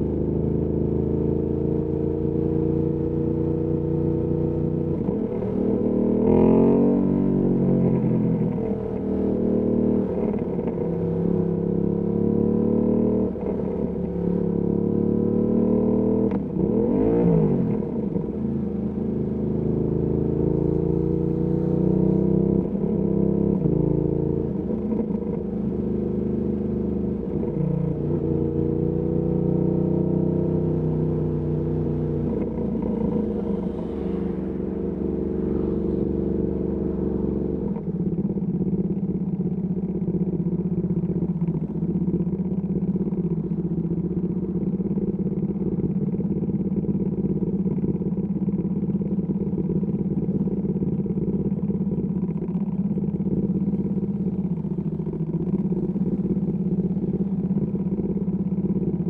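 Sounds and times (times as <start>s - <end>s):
motorcycle engine idling: 17.8s - 59.0s.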